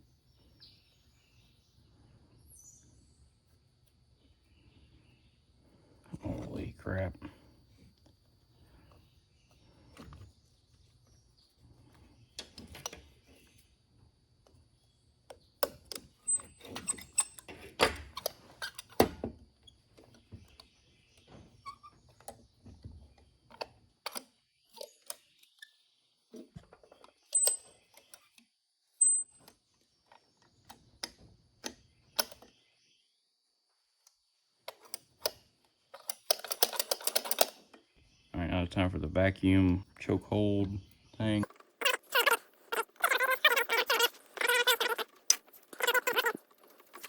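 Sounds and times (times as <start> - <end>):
hand tools clicking and tapping: 36.0 - 37.8.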